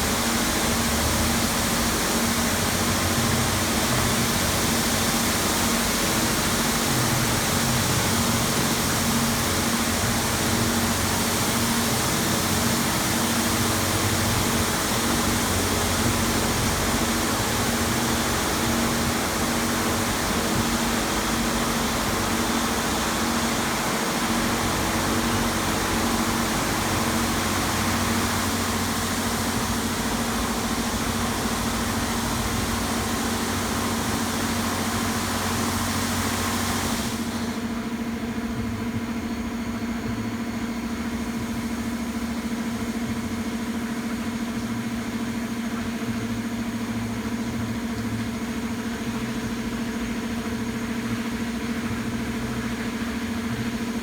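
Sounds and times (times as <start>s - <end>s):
high-pressure spray hissing: 0.0s - 37.8s
motor hum: 0.0s - 54.0s.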